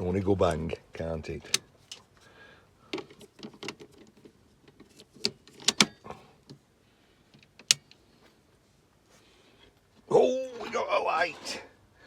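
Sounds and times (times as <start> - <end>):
clicks and knocks handling radio: 1.4 - 2.2, 2.9 - 6.6, 7.3 - 8.0.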